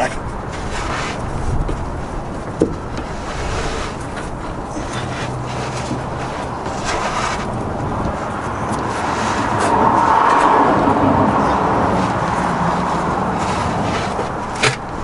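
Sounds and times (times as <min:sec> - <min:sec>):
car passing: 0:00.3 - 0:15.0.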